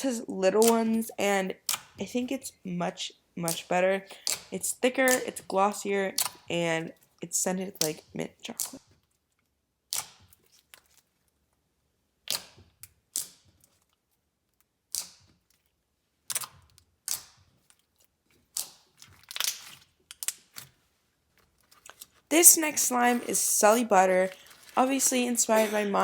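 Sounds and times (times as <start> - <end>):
slime popping and clicking: 1.6 - 2.0, 3.5 - 5.5, 6.2 - 6.5, 7.8 - 8.8, 9.9 - 10.2, 12.3 - 13.4, 16.3 - 17.4, 18.5 - 20.5.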